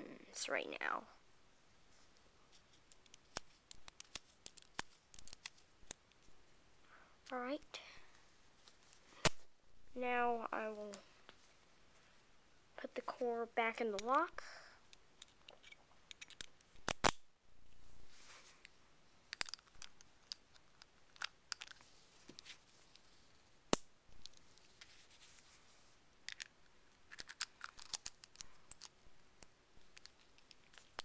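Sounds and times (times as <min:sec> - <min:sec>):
padlock metal clicks and scrapes: 0:02.8 - 0:06.2, 0:14.9 - 0:17.2, 0:19.3 - 0:21.8, 0:27.1 - 0:29.0.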